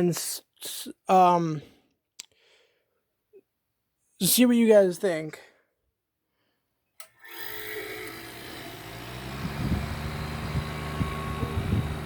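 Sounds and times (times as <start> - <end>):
dehumidifier humming: 8.9 - 12.0.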